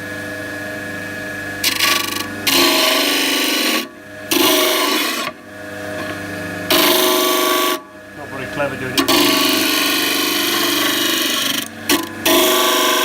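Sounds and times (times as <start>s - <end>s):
steady machine hum: 5.3s - 13.0s.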